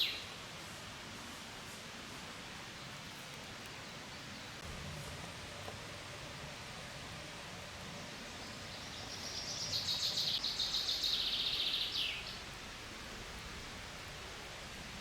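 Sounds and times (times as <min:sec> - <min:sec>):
faint outdoor noise: 0:00.0 - 0:15.0
songbird trilling: 0:08.8 - 0:12.4.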